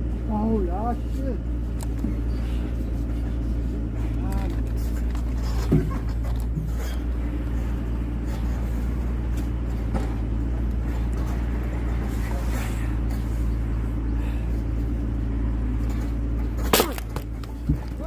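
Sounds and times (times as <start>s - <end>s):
low motor hum: 0.0s - 18.0s
sharp crack: 16.6s - 17.3s.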